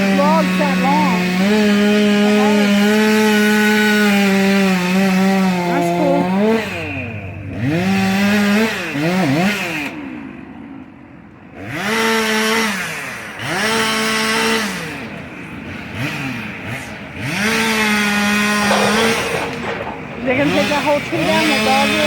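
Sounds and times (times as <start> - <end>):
chainsaw revving and idling: 0.0 - 22.0.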